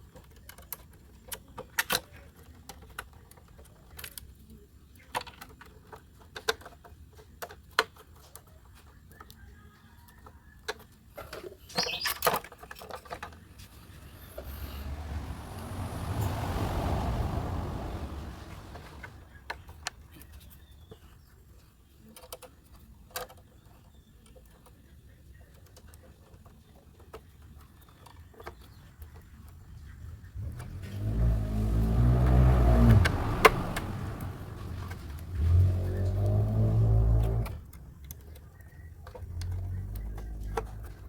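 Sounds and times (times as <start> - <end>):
broad rushing noise: 13.6 - 19.3, 30.7 - 37.4.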